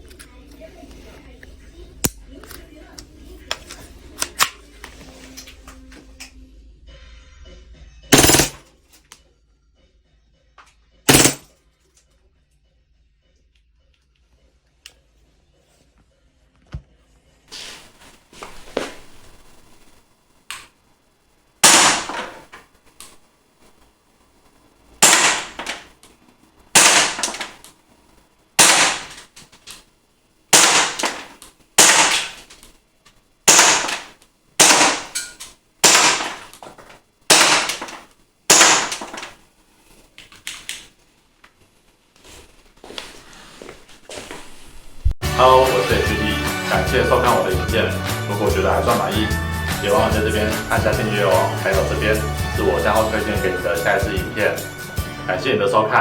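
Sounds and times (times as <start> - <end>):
airsoft pistol shots: 8.2 - 8.6, 11.1 - 11.5, 21.6 - 22.4, 25.0 - 25.9, 26.8 - 27.6, 28.6 - 29.3, 30.6 - 32.5, 33.5 - 35.2, 35.8 - 36.6, 37.3 - 39.4.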